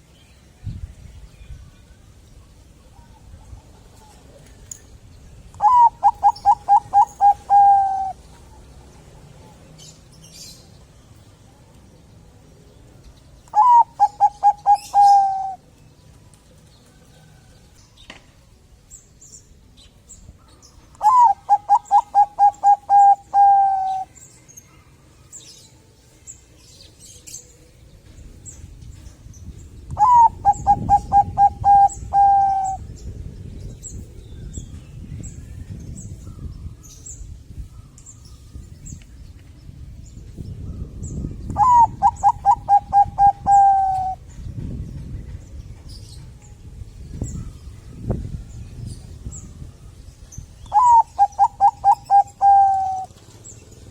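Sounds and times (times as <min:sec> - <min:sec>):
dove cooing: 0:05.6 - 0:08.2, 0:13.5 - 0:15.6, 0:21.0 - 0:24.1, 0:30.0 - 0:32.9, 0:41.6 - 0:44.2, 0:50.7 - 0:53.2.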